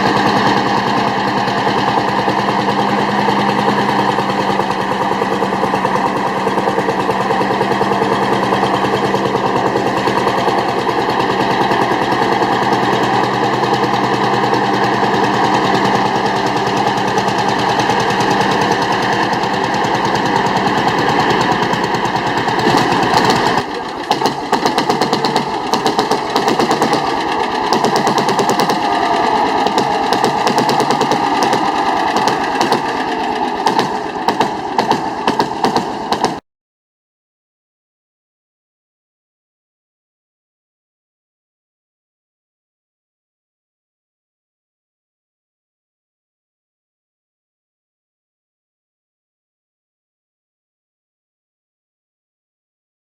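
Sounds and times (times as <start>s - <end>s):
old engine running: 0.0s - 36.4s.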